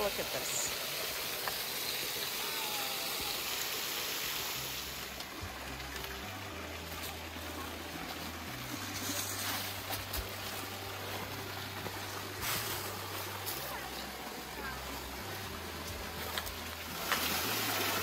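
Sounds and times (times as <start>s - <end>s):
creek water rushing: 0.0s - 18.0s.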